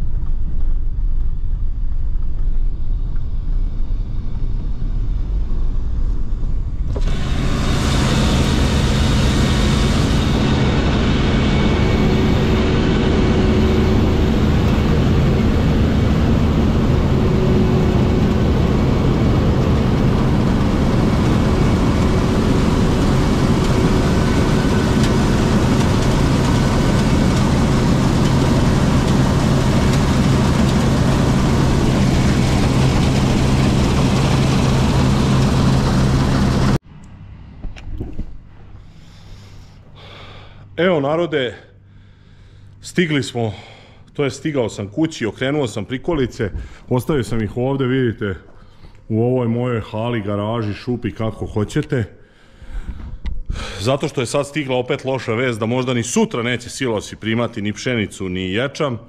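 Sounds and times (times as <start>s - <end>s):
diesel engine running: 0.0s - 41.0s.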